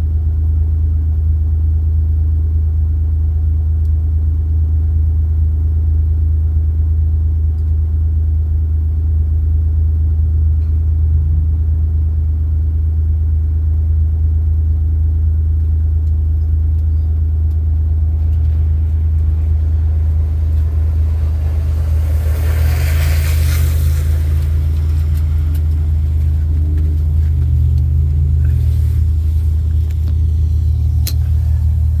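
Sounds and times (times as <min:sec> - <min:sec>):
car driving rumble: 0:00.0 - 0:32.0
hissing rush: 0:18.3 - 0:32.0.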